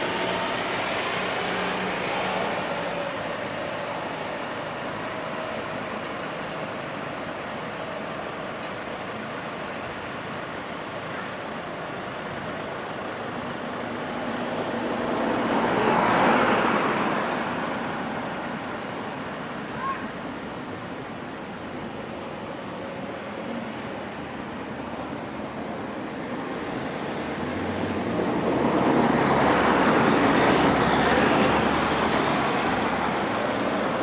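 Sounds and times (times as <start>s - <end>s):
train rumbling past: 28.0s - 34.0s.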